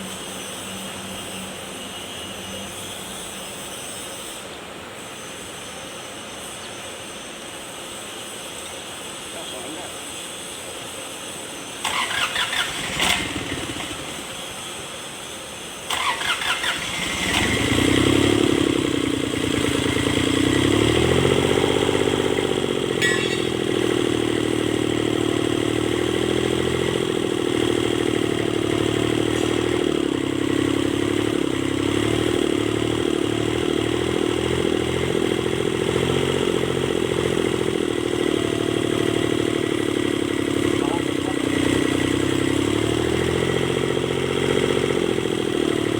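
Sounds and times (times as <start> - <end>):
starter cranking diesel engine: 11.8 - 15.0, 15.8 - 45.9
diesel engine running: 11.8 - 45.9.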